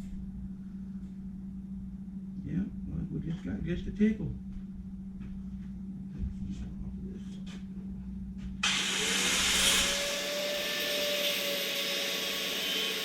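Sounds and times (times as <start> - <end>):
steady low hum: 0.0 - 10.2
loud steady hiss: 8.6 - 10.1
rotary tool whine: 8.6 - 13.0.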